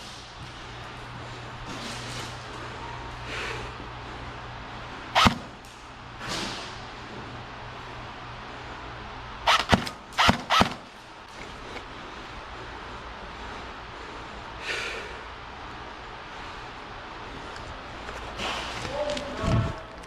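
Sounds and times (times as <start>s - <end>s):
airsoft guns firing: 9.5s - 10.9s.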